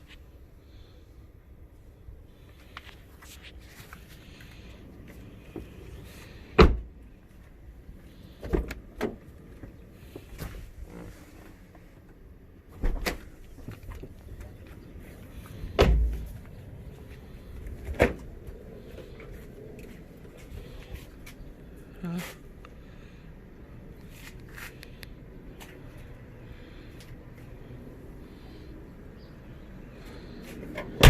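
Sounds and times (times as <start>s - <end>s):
car door clunks and thumps: 6.5s - 7.0s, 8.4s - 9.3s, 12.7s - 14.0s, 15.8s - 16.3s, 17.8s - 18.3s.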